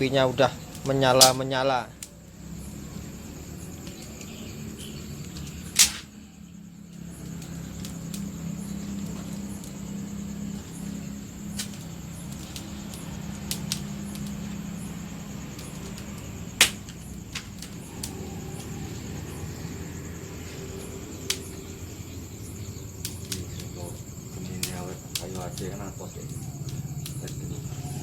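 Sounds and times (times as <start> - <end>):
crickets chirring: 0.0 - 28.0
fire popping: 0.0 - 28.0
wood fire crackling: 0.0 - 28.0.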